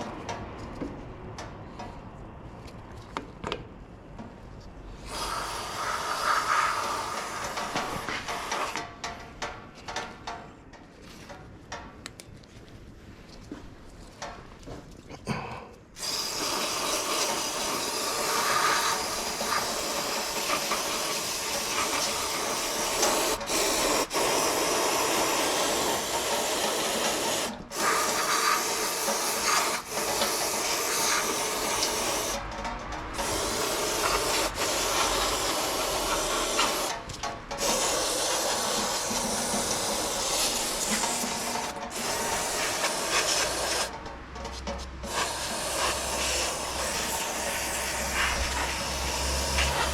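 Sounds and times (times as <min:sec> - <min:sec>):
aerosol spraying: 0:05.0 - 0:08.8, 0:16.0 - 0:32.4, 0:33.2 - 0:37.0, 0:37.6 - 0:44.0, 0:45.0 - 0:49.9.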